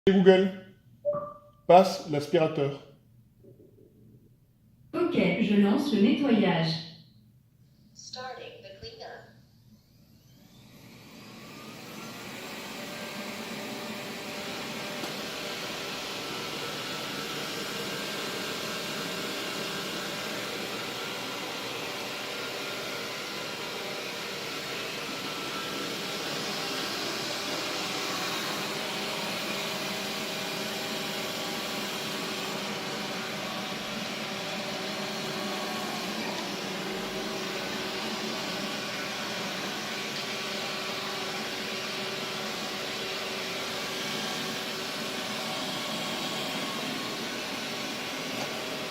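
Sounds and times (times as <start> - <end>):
robot vacuum cleaner running: 10.0 - 48.9.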